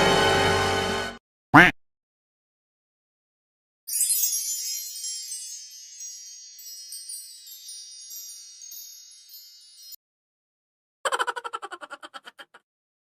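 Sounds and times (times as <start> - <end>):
shimmering metal chimes: 3.9 - 10.0.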